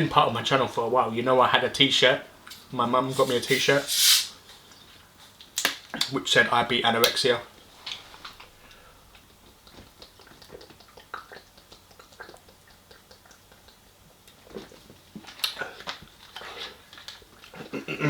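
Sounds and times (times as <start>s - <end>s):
chewing and crunching fried food: 7.8s - 17.8s.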